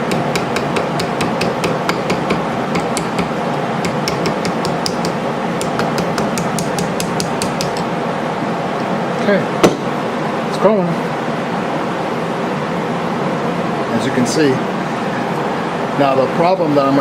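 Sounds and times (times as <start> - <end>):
small hammer tapping metal: 0.0 - 7.9.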